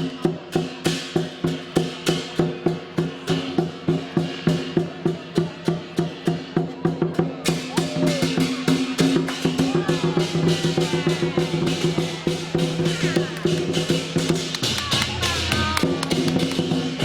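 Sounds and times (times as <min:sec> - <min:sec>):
drum beating: 0:00.0 - 0:17.0
cymbals crashing: 0:07.4 - 0:17.0.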